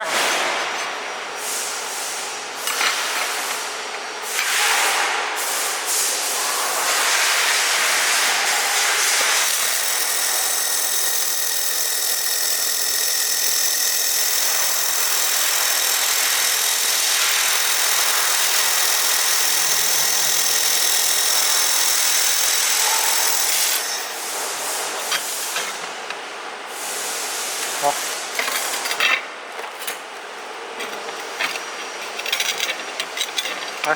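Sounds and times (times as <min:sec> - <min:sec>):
laser welder hissing: 0:17.1 - 0:25.6.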